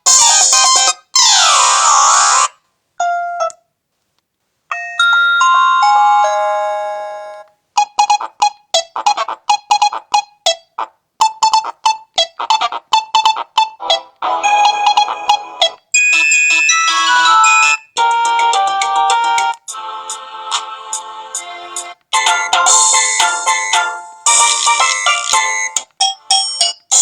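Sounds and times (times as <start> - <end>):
phone ringtones from loudspeaker: 4.8 - 18.0.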